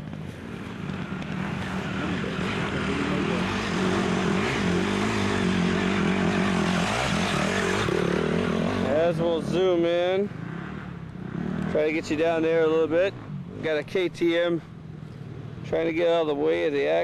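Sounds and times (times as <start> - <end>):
dirt bike engine revving high: 0.6 - 9.8.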